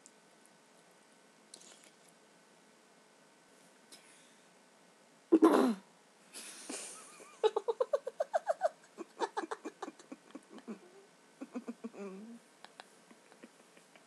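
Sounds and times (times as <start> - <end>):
harsh cough: 5.4 - 5.8
quick giggling laughter: 6.7 - 10.8.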